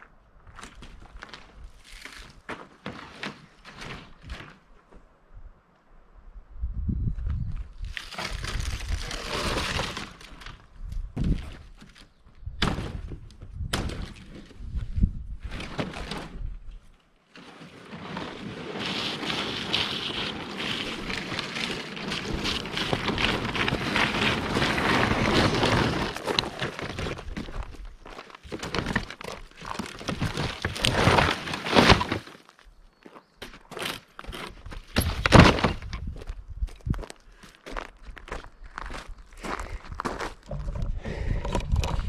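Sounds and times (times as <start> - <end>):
debris scraping and crunching: 7.8 - 12.2, 15.4 - 32.7, 33.4 - 39.0, 40.0 - 42.0
debris knocks and crashes: 17.9 - 27.7, 28.4 - 32.4, 34.9 - 36.2.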